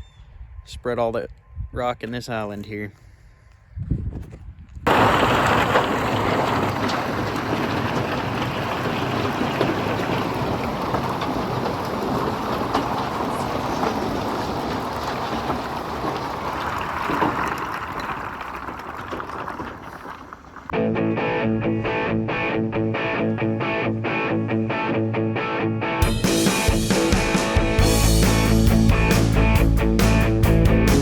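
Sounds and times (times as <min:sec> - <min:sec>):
rocks pouring from truck bed: 0:04.9 - 0:20.7.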